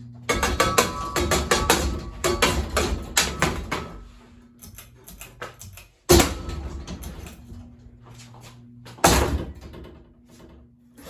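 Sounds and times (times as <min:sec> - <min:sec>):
knocks and rattles on ceiling fan: 0:00.2 - 0:04.3, 0:06.0 - 0:07.8, 0:09.0 - 0:10.8.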